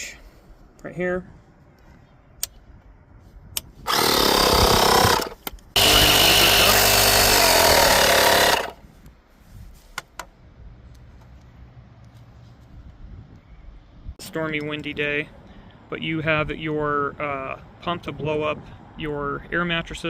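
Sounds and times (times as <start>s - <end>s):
small tire inflator compressor running: 3.9s - 8.8s.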